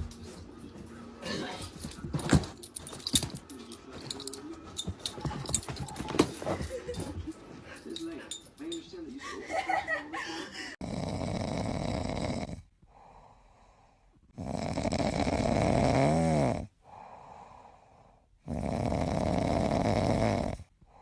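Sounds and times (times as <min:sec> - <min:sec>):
quiet breaths: 0:10.2 - 0:15.9, 0:16.5 - 0:21.0
squirrel snoring: 0:10.8 - 0:21.0.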